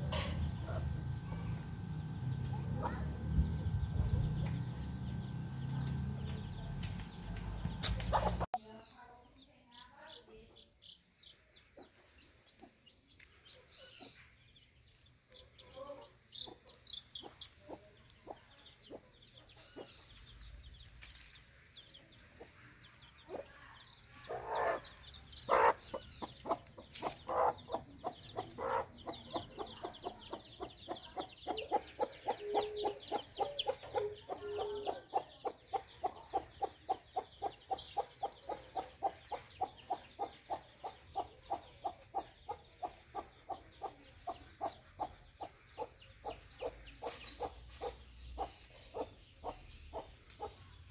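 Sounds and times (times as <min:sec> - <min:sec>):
hen clucking: 0:00.0 - 0:08.6, 0:22.4 - 0:50.8
chicks peeping: 0:00.0 - 0:08.9, 0:10.0 - 0:50.9.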